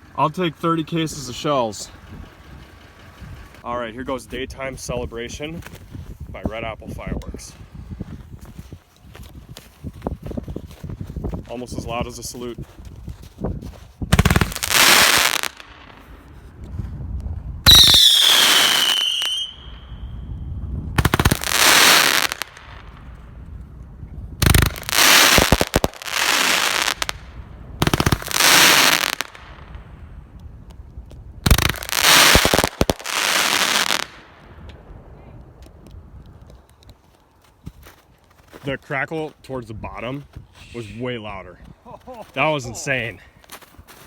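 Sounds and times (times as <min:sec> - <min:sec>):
firework volleys of bangs: 0:14.1 - 0:16.2, 0:17.7 - 0:19.8, 0:21.0 - 0:23.0, 0:24.4 - 0:29.8, 0:31.4 - 0:34.5
firework whistling tails: 0:17.6 - 0:20.3.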